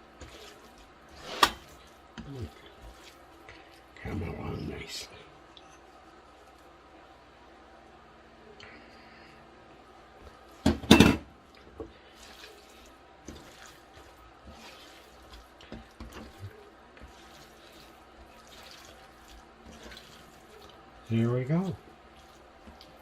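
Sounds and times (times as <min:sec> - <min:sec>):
wet meat mixing in marinade: 0:00.0 - 0:05.1, 0:10.0 - 0:23.0.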